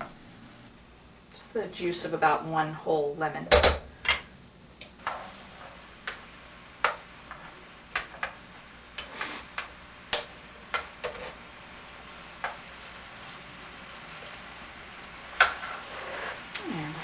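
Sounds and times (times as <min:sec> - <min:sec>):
sauce simmering hiss: 0:04.8 - 0:17.0
utensil tapping a pan: 0:06.8 - 0:08.4, 0:12.4 - 0:12.6.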